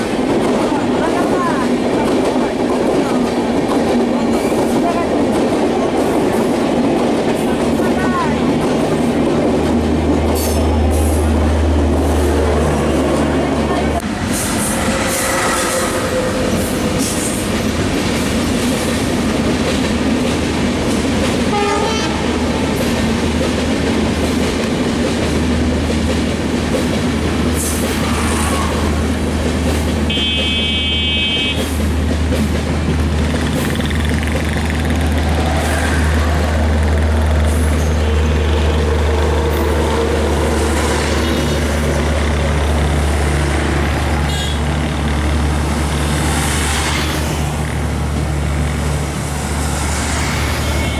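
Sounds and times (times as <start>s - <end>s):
diesel locomotive engine drone: 0.0s - 50.9s
train rail noise: 0.0s - 50.9s
short high train horn toot: 21.5s - 22.3s, 30.1s - 31.7s.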